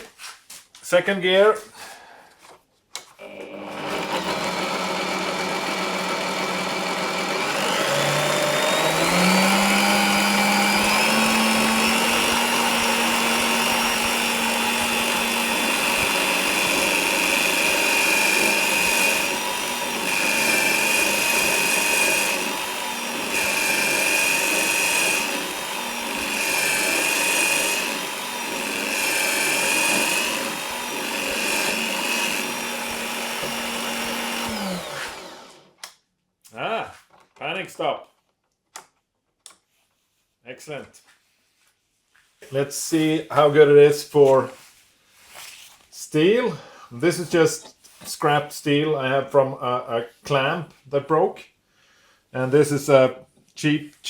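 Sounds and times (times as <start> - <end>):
bench drill motor whine: 3.2 - 35.8.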